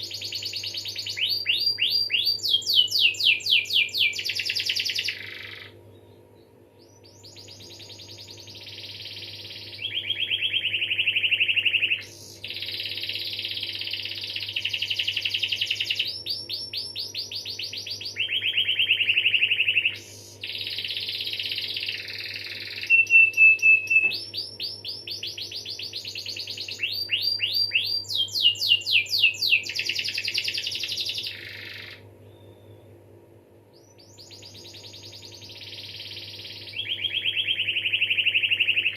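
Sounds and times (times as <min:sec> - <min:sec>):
canary singing trills: 0:00.0 - 0:33.0, 0:33.7 - 0:38.9.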